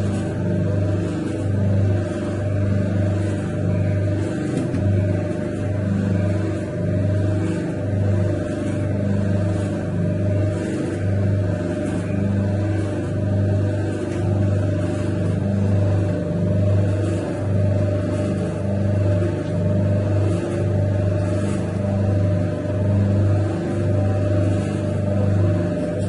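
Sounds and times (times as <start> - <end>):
dough mixer machine humming: 0.0 - 26.0.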